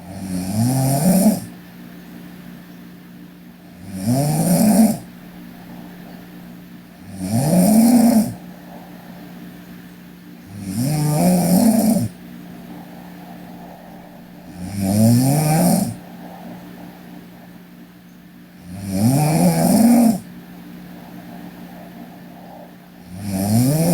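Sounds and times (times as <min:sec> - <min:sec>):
girl snoring: 0:00.0 - 0:01.5, 0:03.8 - 0:06.0, 0:07.0 - 0:09.0, 0:10.4 - 0:16.7, 0:18.6 - 0:20.3, 0:21.7 - 0:23.9
quiet breathing: 0:00.0 - 0:01.6, 0:03.5 - 0:18.7, 0:19.4 - 0:23.9
steady low hum: 0:00.0 - 0:23.9.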